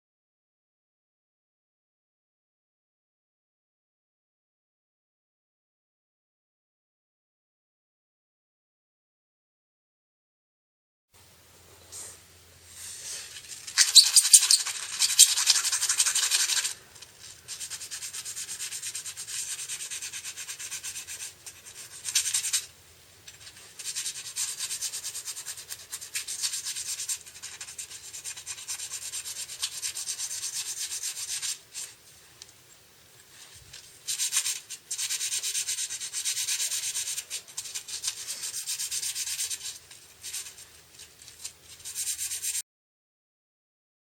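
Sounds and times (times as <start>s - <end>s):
brisk back-and-forth scrubbing: 11.9s - 22.7s, 23.3s - 32.0s, 33.3s - 42.6s.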